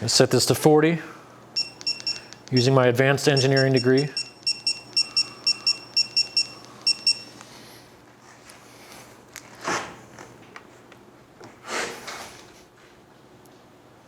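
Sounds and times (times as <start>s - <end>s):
torque wrench beeping: 1.6s - 7.4s.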